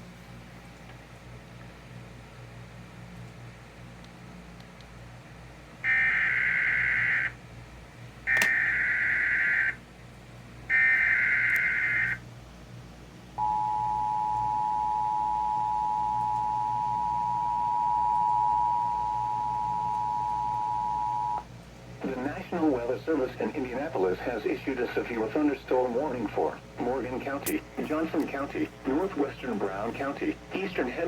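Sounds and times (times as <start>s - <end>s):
two-tone attention signal: 13.4s - 21.4s.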